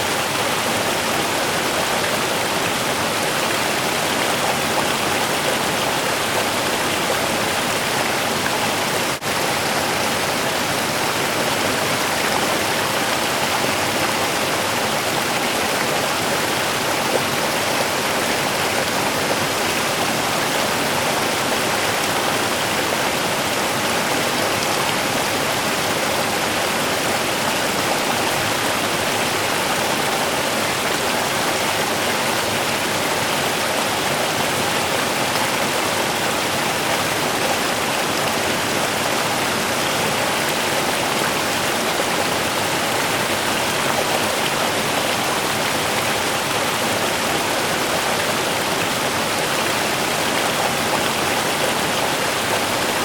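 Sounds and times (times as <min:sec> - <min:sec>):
river water rushing: 0:00.0 - 0:53.0.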